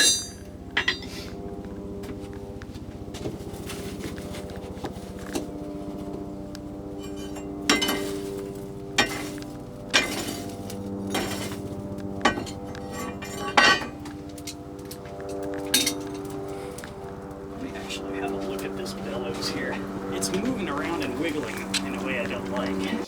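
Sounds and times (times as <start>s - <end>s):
anvil ringing: 0.0s - 1.2s, 7.0s - 8.2s, 12.2s - 14.1s, 15.7s - 16.3s
hammer striking steel on anvil: 0.0s - 1.2s, 7.0s - 8.2s, 9.0s - 10.5s, 12.2s - 14.1s, 15.7s - 16.2s.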